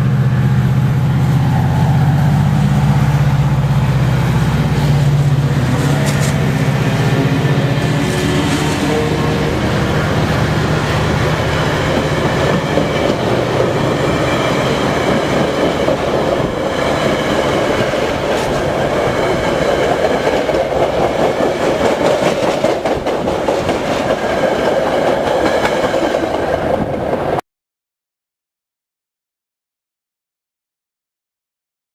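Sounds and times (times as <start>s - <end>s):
low diesel engine drone: 0.0s - 19.0s
train wheels clattering on rails: 4.3s - 27.4s.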